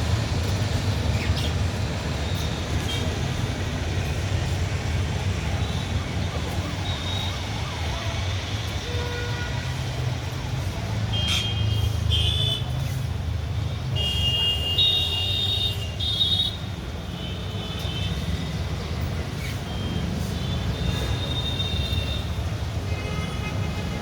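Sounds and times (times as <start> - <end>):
low rumble of street traffic: 0.0 - 24.0.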